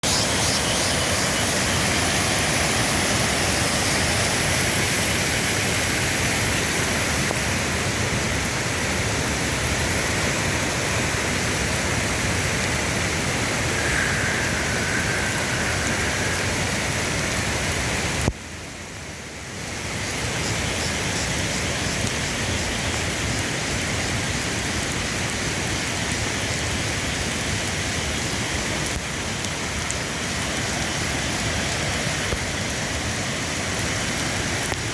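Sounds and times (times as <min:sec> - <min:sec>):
waterfall rushing: 0:00.0 - 0:18.3
steady rain: 0:00.0 - 0:34.9.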